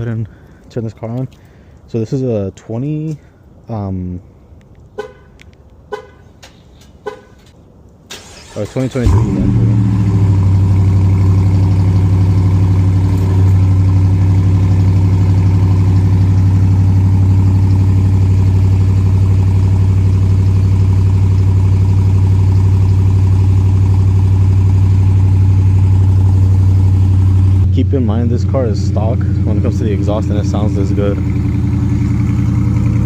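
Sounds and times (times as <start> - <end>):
car engine idling with deep rumble: 8.8 - 33.0.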